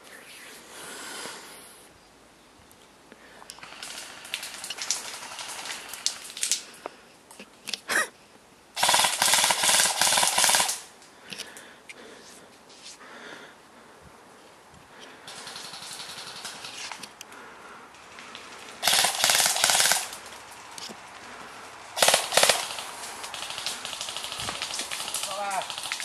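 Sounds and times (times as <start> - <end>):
airsoft rifle full-auto burst: 3.6 - 6.3, 8.8 - 10.9, 15.3 - 17.0, 18.8 - 20.2, 22.0 - 26.0
rustling and scuffing of movement: 12.1 - 13.1.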